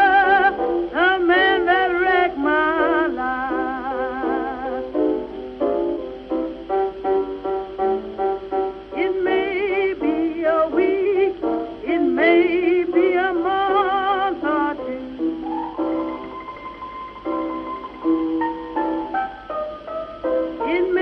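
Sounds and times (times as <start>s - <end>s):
person singing with vibrato: 0.0s - 5.1s, 8.9s - 18.4s, 20.6s - 21.0s
piano chords: 0.0s - 21.0s.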